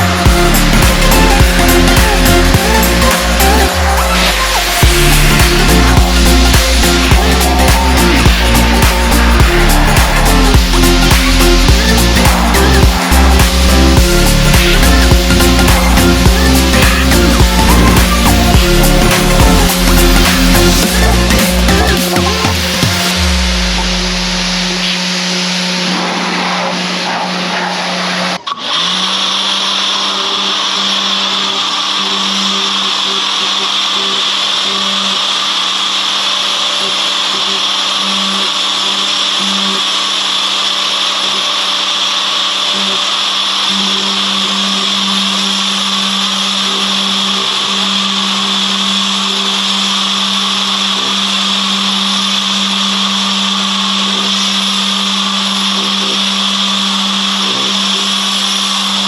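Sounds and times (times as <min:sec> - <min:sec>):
pressure washer running: 0:00.0 - 0:59.0.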